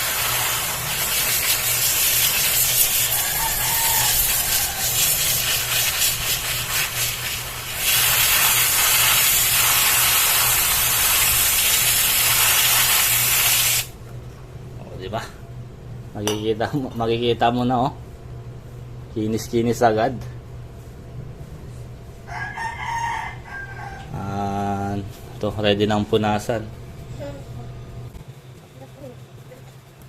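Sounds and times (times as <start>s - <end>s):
aerosol spray hissing: 0.0s - 13.9s.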